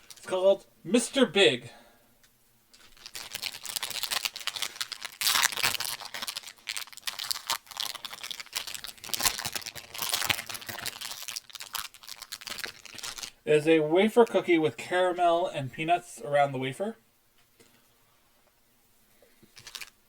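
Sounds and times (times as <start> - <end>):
plastic wrapper crinkling: 0.0 - 0.4, 2.7 - 13.4, 19.4 - 20.0.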